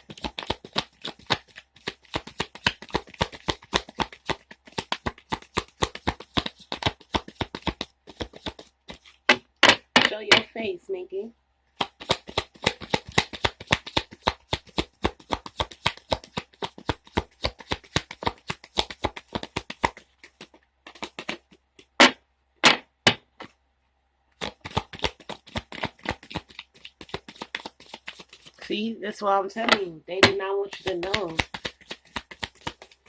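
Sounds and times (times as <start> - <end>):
cards being shuffled: 0.0 - 9.4, 11.8 - 22.2, 24.4 - 28.7, 30.7 - 33.0.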